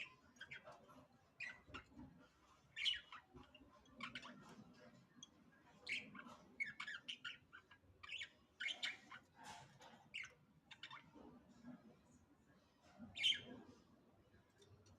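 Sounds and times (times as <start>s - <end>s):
budgerigars chirping and squawking: 0.0s - 11.9s, 12.8s - 13.7s.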